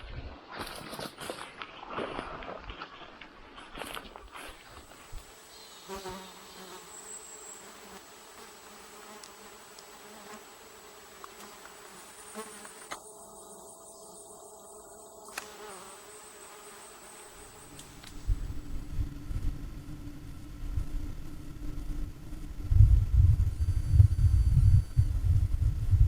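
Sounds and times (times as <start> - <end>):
flying insects buzzing: 4.5 - 26.0
high pulsing chirr: 12.0 - 26.0.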